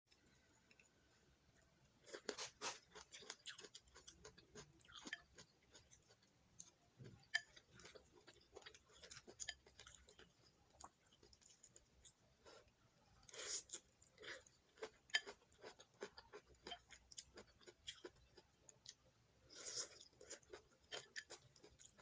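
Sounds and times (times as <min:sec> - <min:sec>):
close chewing and mouth sounds: 0:00.1 - 0:22.0.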